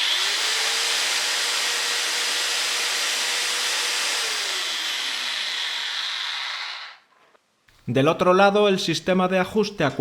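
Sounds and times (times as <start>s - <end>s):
electric saw motor whine: 0.0s - 7.0s.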